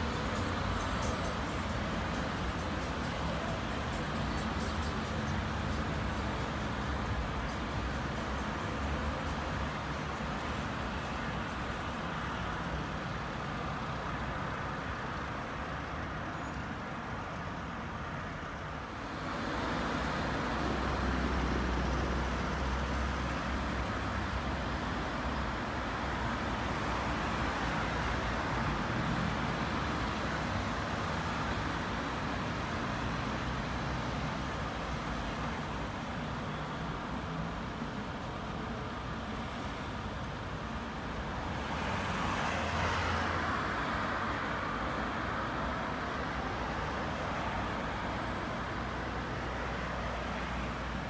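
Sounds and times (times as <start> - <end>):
passing cars: 0.0 - 51.0.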